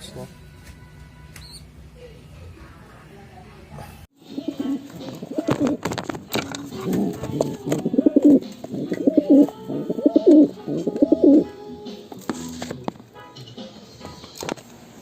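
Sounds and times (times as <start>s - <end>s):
pigeon cooing: 4.2s - 11.7s.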